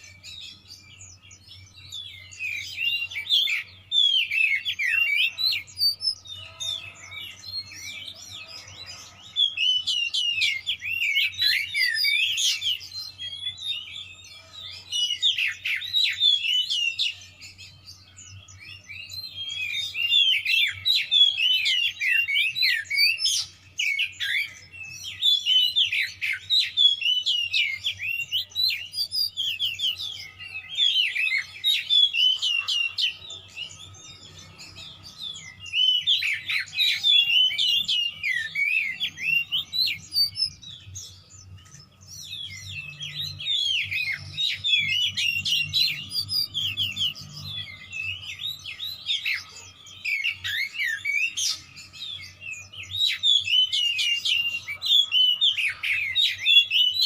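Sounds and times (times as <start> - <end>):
bird singing whistled notes: 0.0 - 57.0.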